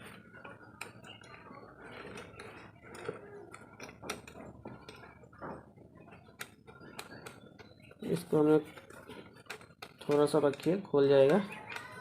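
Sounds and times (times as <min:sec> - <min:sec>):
screwdriver clicking and scraping: 0:08.7 - 0:12.0.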